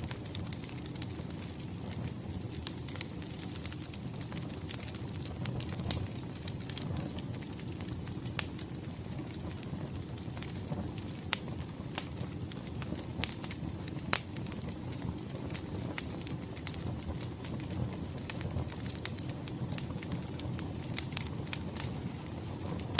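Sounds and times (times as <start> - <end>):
wood fire crackling and popping: 0.0 - 22.9.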